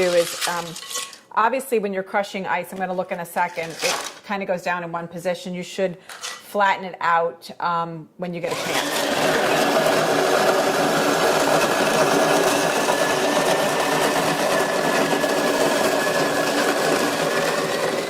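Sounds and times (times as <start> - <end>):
snow cone maker crushing ice: 0.0 - 0.9, 8.5 - 18.0.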